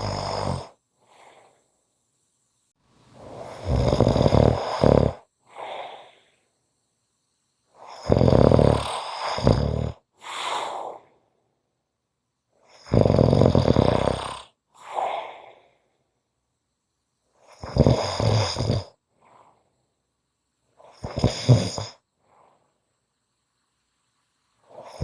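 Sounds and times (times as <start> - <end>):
person snoring: 0.0 - 1.6, 3.2 - 6.3, 7.8 - 11.1, 12.7 - 15.7, 17.5 - 19.5, 20.8 - 22.5, 24.6 - 25.0.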